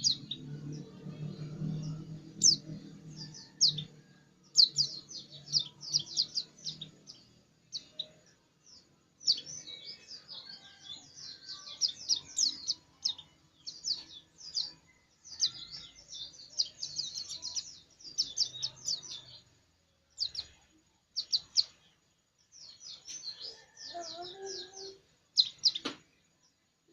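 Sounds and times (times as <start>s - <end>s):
bird twittering: 0.0s - 0.6s, 1.3s - 3.9s, 4.5s - 8.4s, 9.2s - 19.4s, 22.8s - 25.9s.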